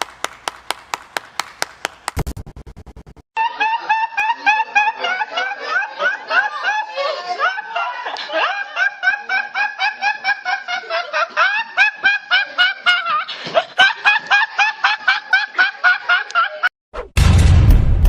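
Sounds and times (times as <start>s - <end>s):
high-pitched snickering laugh: 3.4s - 16.7s.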